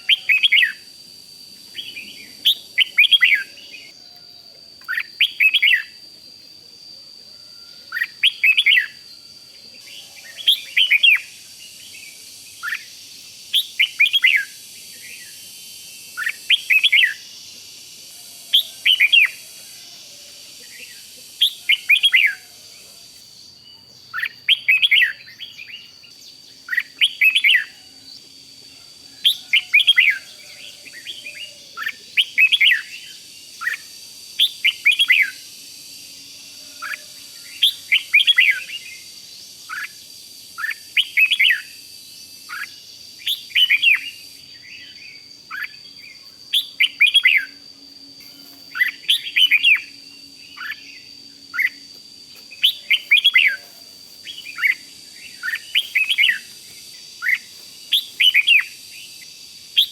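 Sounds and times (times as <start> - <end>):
bird singing warbled phrases: 0.0 - 0.8, 4.9 - 6.0, 7.9 - 9.0, 9.8 - 15.4, 16.1 - 17.3, 23.6 - 27.8, 39.7 - 41.8, 42.4 - 47.6, 48.7 - 51.8, 52.6 - 59.9.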